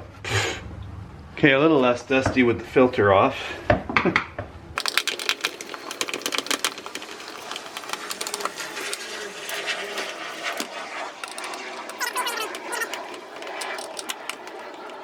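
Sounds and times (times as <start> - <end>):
screwdriver clicking and scraping: 4.8 - 15.0.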